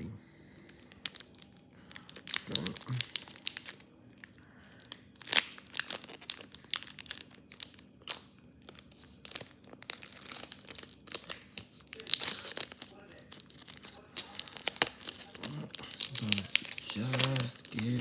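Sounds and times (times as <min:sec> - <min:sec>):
wrapper crinkling and tearing: 0:00.7 - 0:18.0.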